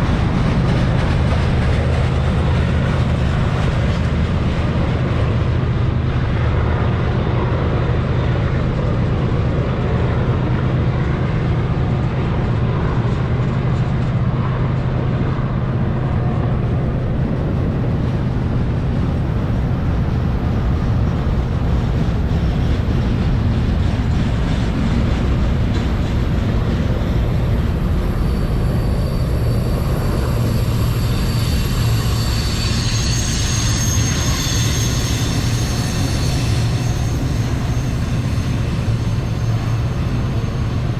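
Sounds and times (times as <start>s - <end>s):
freight train rumbling past: 0.0s - 40.9s
high-pitched wheel squeal: 28.1s - 40.8s.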